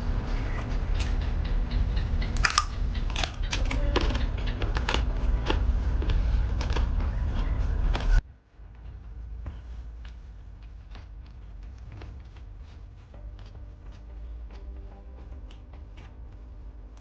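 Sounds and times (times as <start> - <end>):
low hum: 0.0 - 17.0
sharp clicks and crackles: 0.4 - 8.2
chewing and mouth sounds: 1.0 - 8.2.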